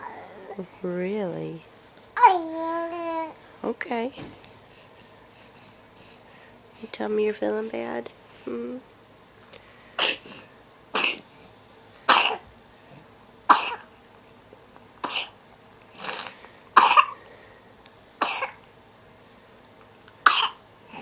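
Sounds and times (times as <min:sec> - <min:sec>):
person coughing: 0:16.8 - 0:17.2, 0:20.3 - 0:20.6.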